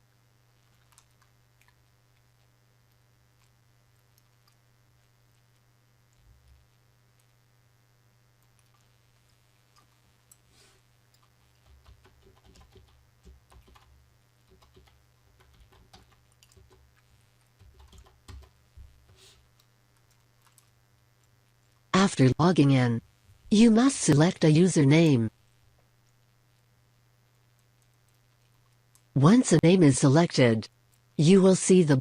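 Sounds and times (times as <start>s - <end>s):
computer keyboard and mouse clicking: 0.7s - 1.8s, 11.1s - 21.3s.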